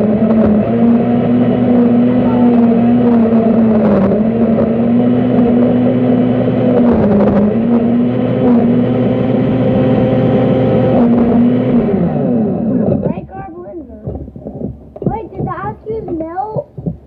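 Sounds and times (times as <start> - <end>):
blender motor running: 0.0 - 13.2.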